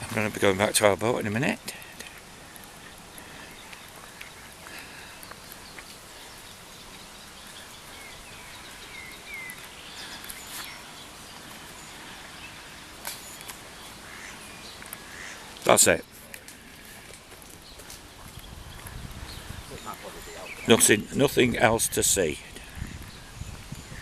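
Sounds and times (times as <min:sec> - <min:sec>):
steady background noise: 0:00.0 - 0:24.0
faint bird chirps: 0:18.4 - 0:21.3.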